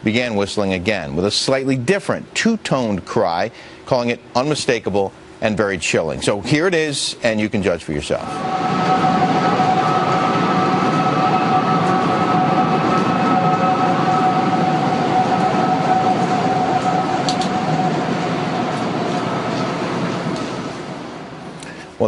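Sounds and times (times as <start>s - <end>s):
eerie two-toned wind whistling: 8.1s - 21.6s
strong wind rushing: 8.2s - 21.6s.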